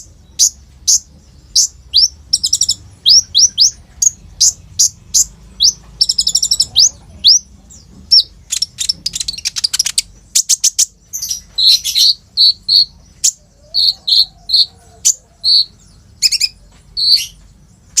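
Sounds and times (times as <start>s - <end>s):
bird singing high chirps: 0.0s - 18.0s
buzzy bird trill: 0.0s - 18.0s.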